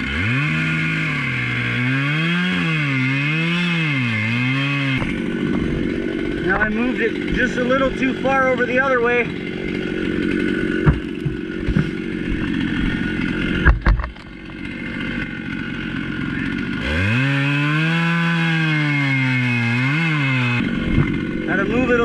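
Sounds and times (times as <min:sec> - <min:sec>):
chainsaw running: 0:00.0 - 0:22.0
knocks: 0:10.8 - 0:11.9.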